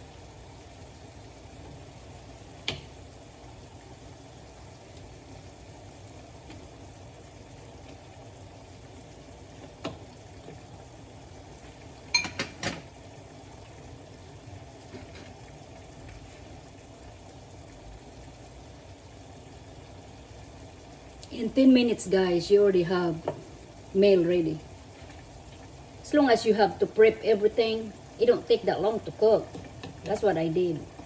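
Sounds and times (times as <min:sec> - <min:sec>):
food simmering in a pan: 0:00.0 - 0:31.0
cookware clinking: 0:12.1 - 0:12.8.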